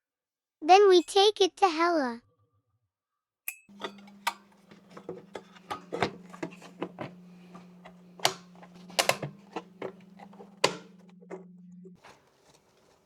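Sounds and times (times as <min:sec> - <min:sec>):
low hum: 0:03.7 - 0:12.0
plastic parts clicking and knocking: 0:03.7 - 0:13.0.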